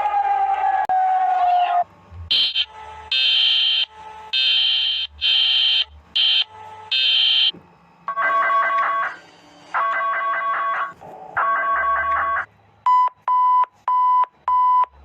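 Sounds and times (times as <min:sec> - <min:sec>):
high-pitched alarm beeping: 0:02.3 - 0:07.5.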